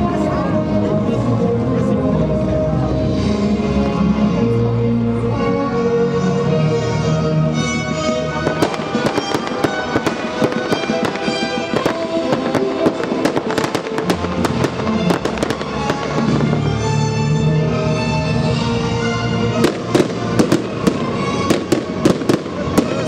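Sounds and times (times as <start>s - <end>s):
music: 0.0s - 23.0s
fireworks bangs and crackles: 8.3s - 17.0s, 19.6s - 23.0s.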